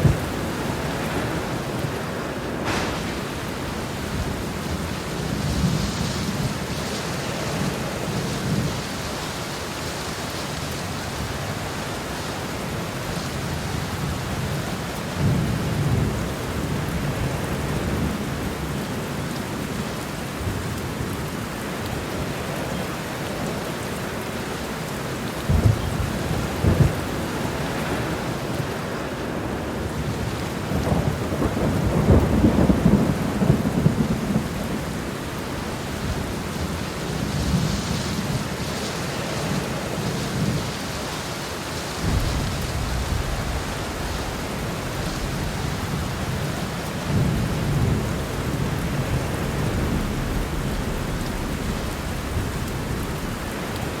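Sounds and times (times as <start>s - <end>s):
thunder rumbling: 0.0s - 9.8s, 25.4s - 40.8s, 41.9s - 54.0s
heavy rain pouring: 0.0s - 54.0s.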